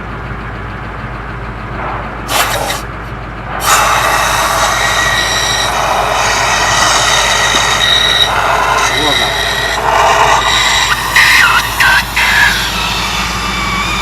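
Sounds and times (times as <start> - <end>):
steady low hum: 0.0 - 14.0
compressed air hiss with whistle: 2.3 - 2.9, 3.5 - 14.0.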